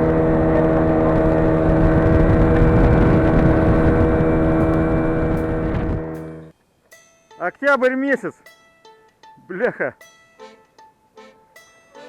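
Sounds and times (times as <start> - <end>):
motor engine humming steadily: 0.0 - 6.5
rushing noise of travel: 0.0 - 6.5.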